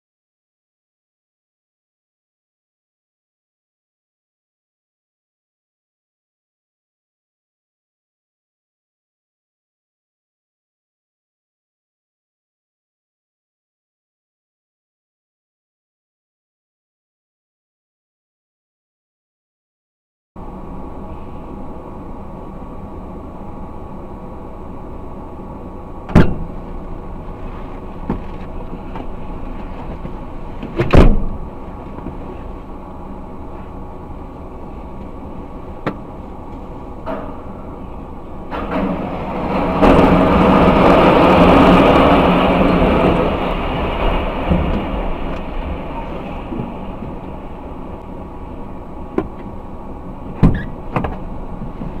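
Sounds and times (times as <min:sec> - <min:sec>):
loud rumbling noise: 0:20.4 - 0:52.0.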